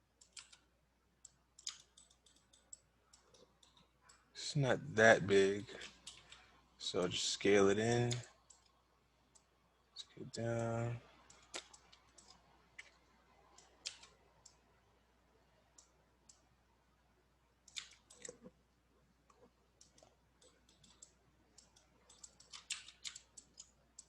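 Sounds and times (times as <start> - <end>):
computer mouse and keyboard clicks: 0.2 - 4.2, 5.7 - 6.5, 8.1 - 9.5, 10.6 - 14.6, 17.6 - 18.6, 19.3 - 24.0.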